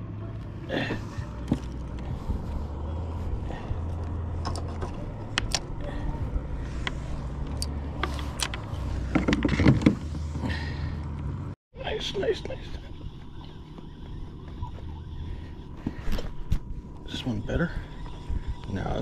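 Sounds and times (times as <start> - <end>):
steady low rumble: 0.0 - 19.0
fishing tackle clicks and knocks: 4.4 - 5.8.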